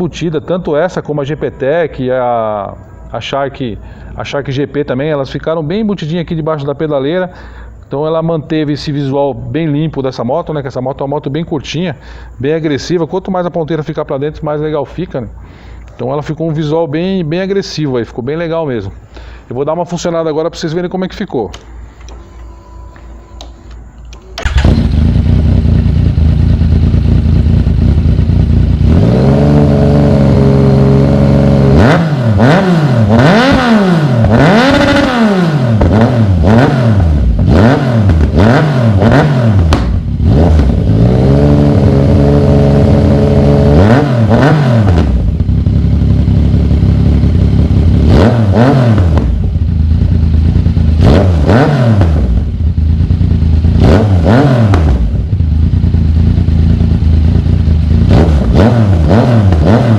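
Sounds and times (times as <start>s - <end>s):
motorcycle engine revving: 24.4s - 59.9s.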